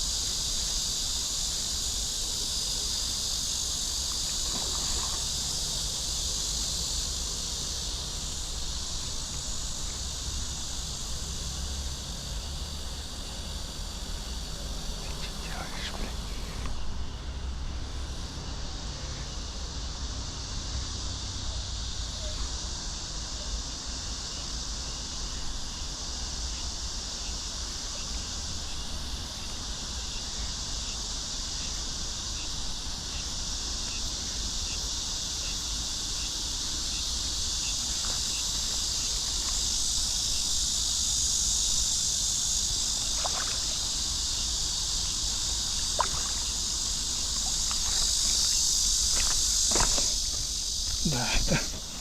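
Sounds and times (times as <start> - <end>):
high-pitched insect chorus: 0.0 - 52.0.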